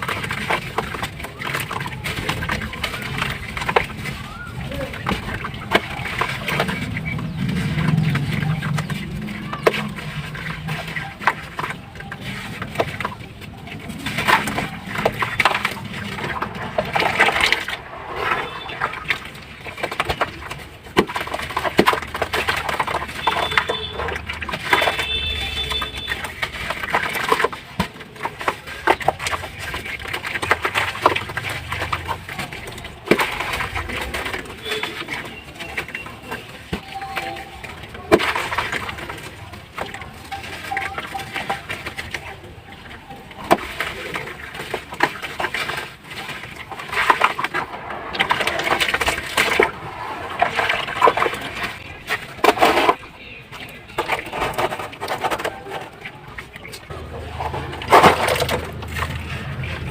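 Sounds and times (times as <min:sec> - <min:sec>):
slabs crumbling in water: 0:00.0 - 0:59.9.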